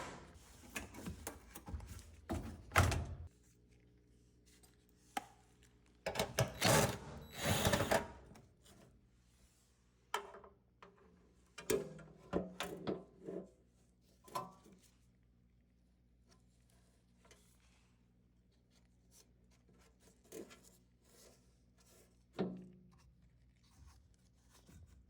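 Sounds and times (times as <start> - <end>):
knocks and clicks of dryer parts: 0.0 - 3.3.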